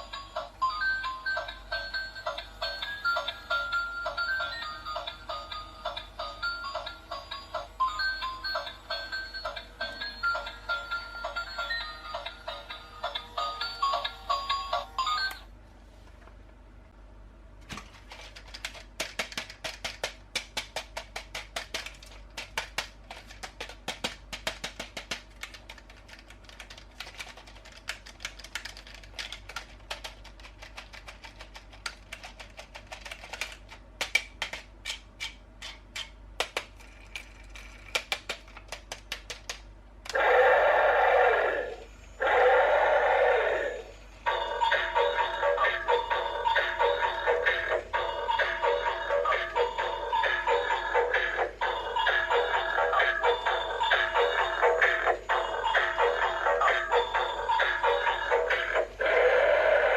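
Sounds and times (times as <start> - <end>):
toy song with synthetic singing: 0.0 - 15.4, 44.2 - 59.9.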